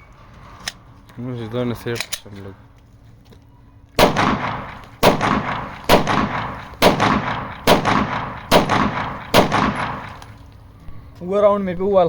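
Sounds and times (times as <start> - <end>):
pistol shots with echo: 4.0 - 10.4.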